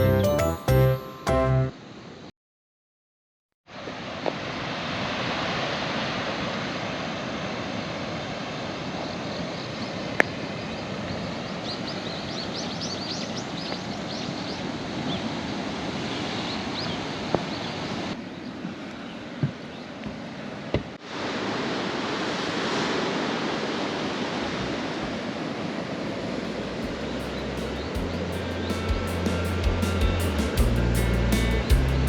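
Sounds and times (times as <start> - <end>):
wind: 1.4 - 2.3, 3.7 - 32.0
sea waves on the shore: 3.7 - 19.4, 20.3 - 27.8.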